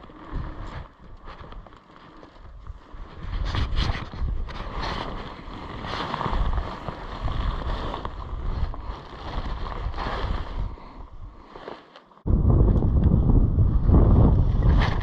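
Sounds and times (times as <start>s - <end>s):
wind buffeting microphone: 2.5s - 11.4s, 12.2s - 15.0s.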